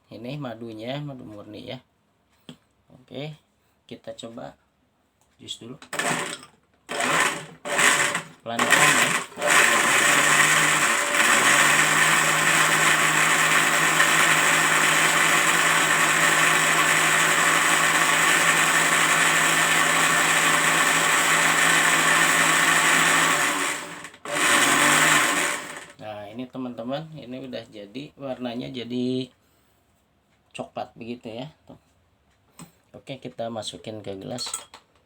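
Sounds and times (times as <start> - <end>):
kitchen blender running: 5.9 - 26.0.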